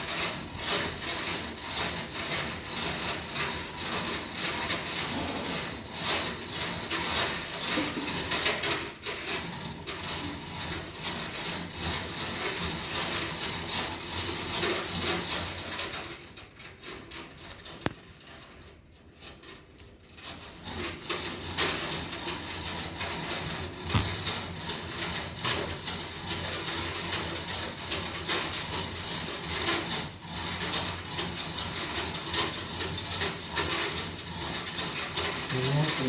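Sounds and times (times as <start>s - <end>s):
cement mixer scraping: 0.0s - 15.9s, 20.5s - 36.0s.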